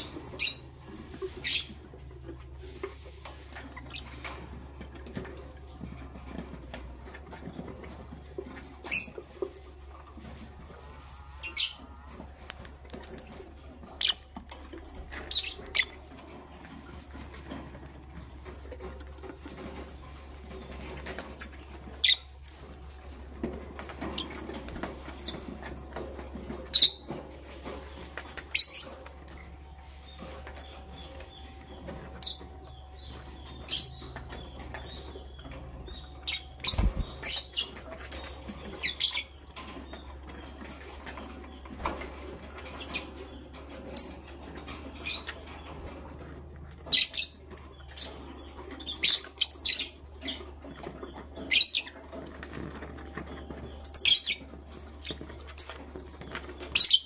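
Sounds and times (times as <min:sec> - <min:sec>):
lovebirds chirping: 0:00.0 - 0:02.0, 0:11.4 - 0:16.4, 0:28.1 - 0:46.0, 0:46.7 - 0:57.0.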